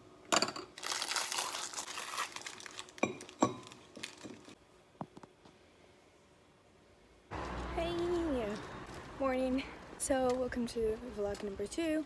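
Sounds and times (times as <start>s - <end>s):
packaging crinkling and rustling: 0.8s - 4.6s.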